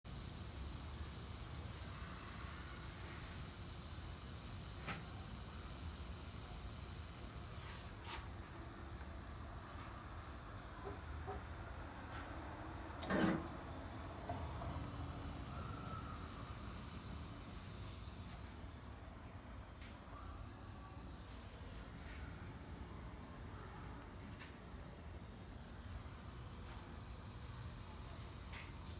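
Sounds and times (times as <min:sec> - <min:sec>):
gas hissing from valve: 0:00.1 - 0:11.8, 0:12.9 - 0:19.0, 0:25.4 - 0:28.9.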